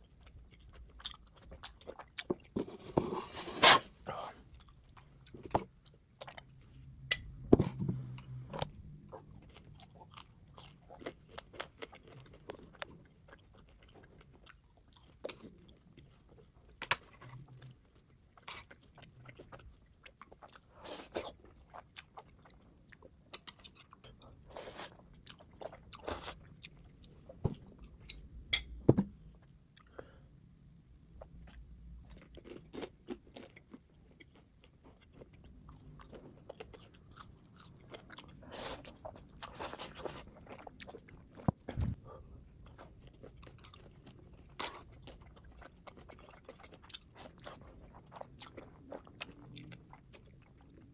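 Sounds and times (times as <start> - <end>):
crisp chewing crunches: 31.5 - 42.0.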